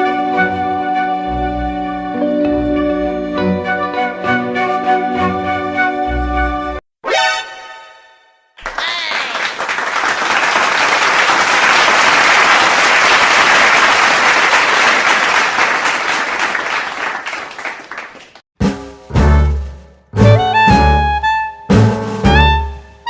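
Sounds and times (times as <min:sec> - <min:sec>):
crowd applauding: 0:08.6 - 0:18.4.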